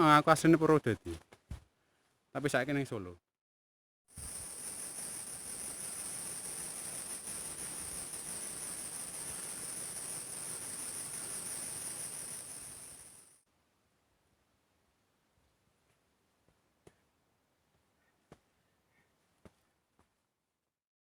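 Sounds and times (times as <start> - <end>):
insect chorus chirring: 4.2 - 13.4.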